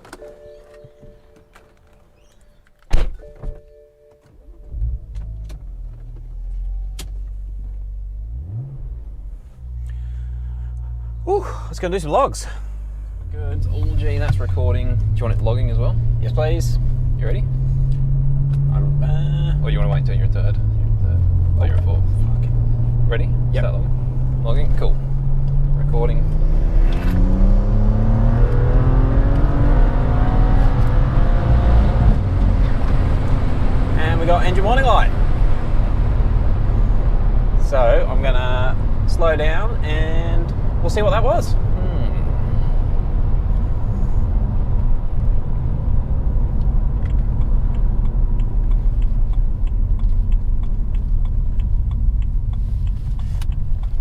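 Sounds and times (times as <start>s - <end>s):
car engine accelerating: 4.5s - 54.0s
faint regular ticking: 44.8s - 54.0s.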